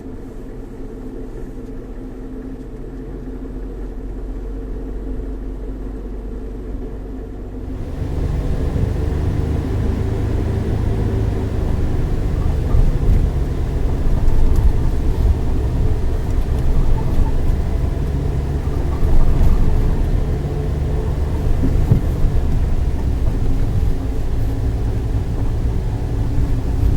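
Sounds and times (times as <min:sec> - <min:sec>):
car engine running: 0:00.0 - 0:26.9
road rumble: 0:00.0 - 0:26.9
light knocks from rough track: 0:11.9 - 0:25.0.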